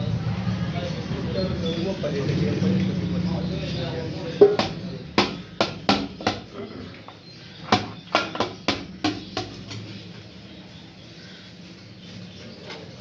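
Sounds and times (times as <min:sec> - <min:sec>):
cooking utensils clattering: 0:01.0 - 0:10.3.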